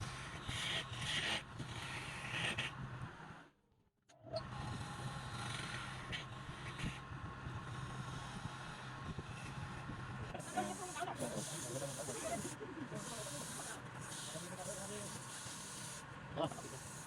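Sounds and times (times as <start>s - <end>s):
tool scraping spinning wood: 10.4s - 17.0s.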